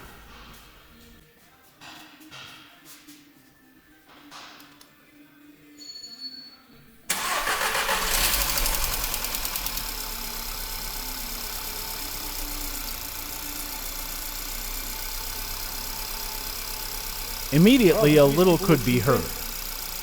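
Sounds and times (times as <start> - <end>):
car engine starting and idling: 7.1 - 20.0.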